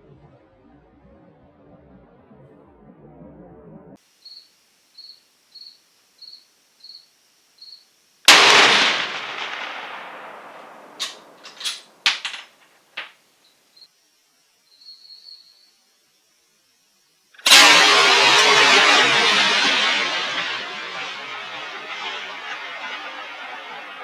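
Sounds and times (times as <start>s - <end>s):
rifle shot with echo: 8.3s - 12.5s.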